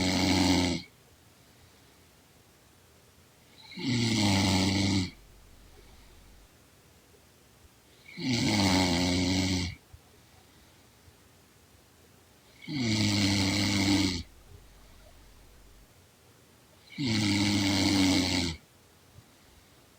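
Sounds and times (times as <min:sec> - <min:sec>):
woman snoring: 0:00.0 - 0:00.8, 0:03.7 - 0:06.4, 0:08.1 - 0:09.8, 0:12.6 - 0:15.8, 0:16.9 - 0:18.6.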